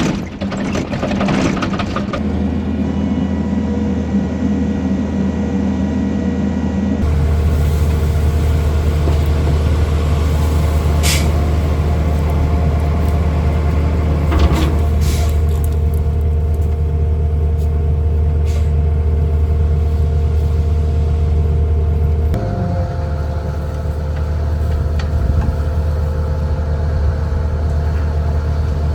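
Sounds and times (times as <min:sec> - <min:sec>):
heavy equipment engine humming: 0:01.6 - 0:28.9
brief hisses: 0:11.0 - 0:11.4.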